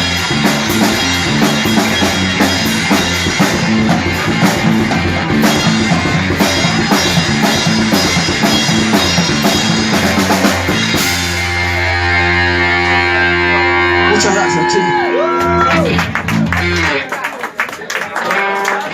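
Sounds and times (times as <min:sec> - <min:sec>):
drum kit: 0:00.0 - 0:14.6
electric guitar chord ringing: 0:10.6 - 0:15.4.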